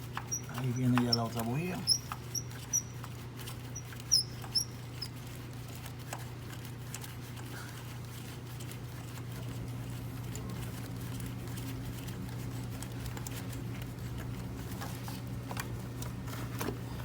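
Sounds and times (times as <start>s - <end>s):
short high squeaks: 0.3s - 3.0s, 3.6s - 5.2s.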